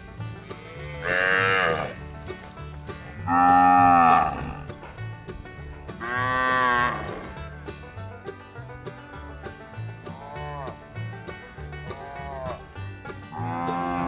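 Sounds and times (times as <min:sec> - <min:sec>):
background music: 0:00.0 - 0:14.0
cattle mooing: 0:00.6 - 0:02.0, 0:03.1 - 0:04.7, 0:06.0 - 0:07.3, 0:12.0 - 0:12.6, 0:13.3 - 0:14.0.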